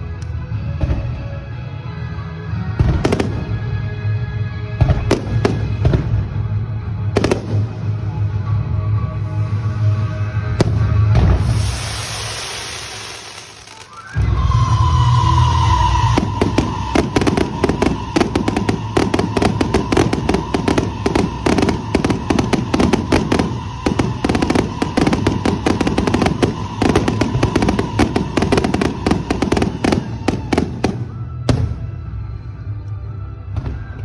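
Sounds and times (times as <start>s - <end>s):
fireworks crackling: 9.3s - 31.6s.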